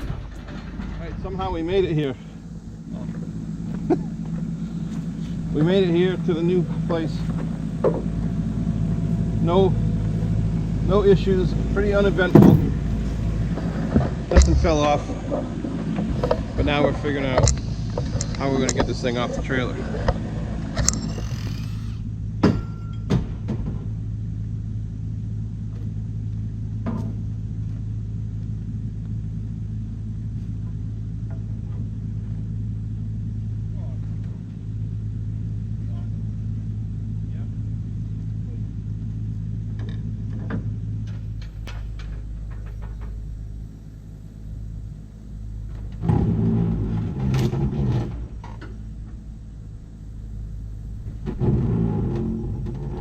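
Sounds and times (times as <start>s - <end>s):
engine idling: 0.0s - 53.0s
sharp knocks: 12.0s - 13.1s.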